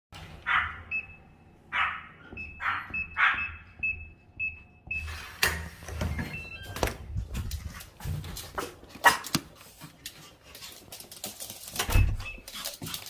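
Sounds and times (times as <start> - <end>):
dog barking: 0.4 - 0.9, 1.7 - 3.6, 9.0 - 9.4.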